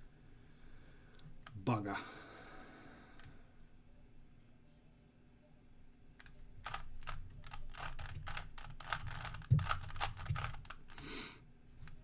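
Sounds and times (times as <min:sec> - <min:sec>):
plastic puzzle cube clicking: 0:06.2 - 0:11.0.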